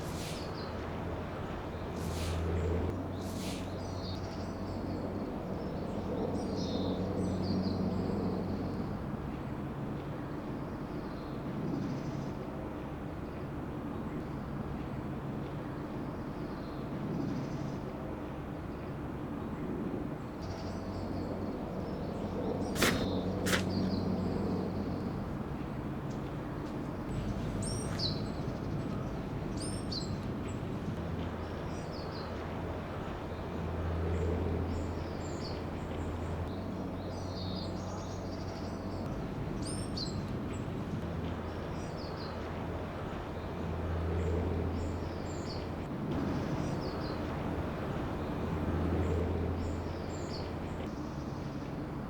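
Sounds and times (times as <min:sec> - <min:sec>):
small birds chirping: 0:00.0 - 0:05.0, 0:20.4 - 0:25.4, 0:26.0 - 0:32.4
low outdoor rumble: 0:00.0 - 0:12.2, 0:13.2 - 0:52.0.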